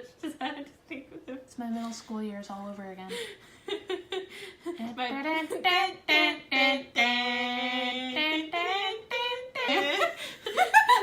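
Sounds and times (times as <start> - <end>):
girl singing: 4.8 - 10.2.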